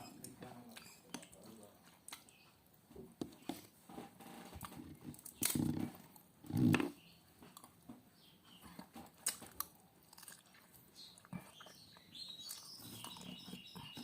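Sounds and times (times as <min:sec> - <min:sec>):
chewing: 0:00.2 - 0:02.7, 0:04.3 - 0:07.9, 0:08.5 - 0:14.0
food crunching: 0:04.3 - 0:07.9, 0:08.7 - 0:14.0.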